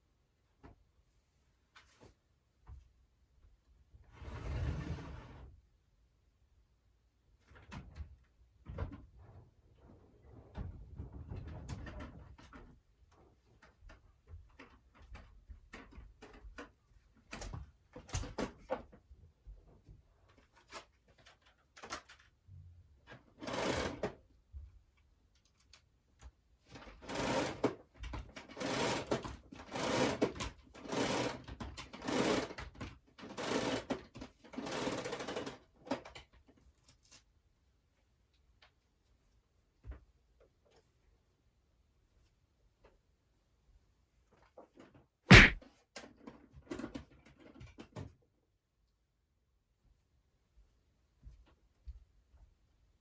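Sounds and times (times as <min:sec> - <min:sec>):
knocks and clicks of clutter: 0:45.3 - 0:45.6.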